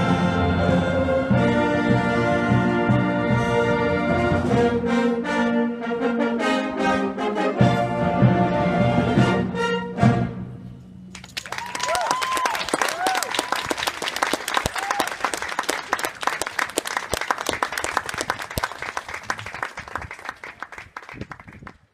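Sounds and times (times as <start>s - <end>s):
brass band playing: 0.0s - 10.6s
audience applauding and cheering: 11.2s - 21.8s.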